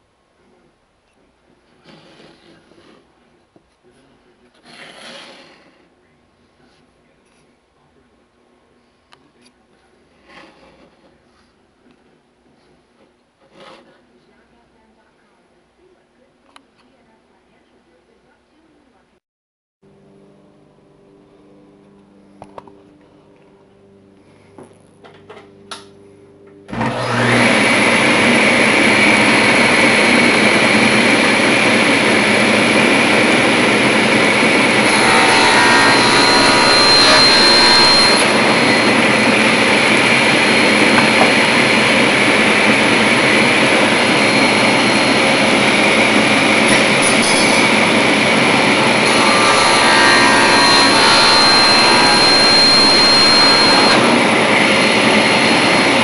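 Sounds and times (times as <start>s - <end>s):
power tool high whine: 26.7s - 56.0s.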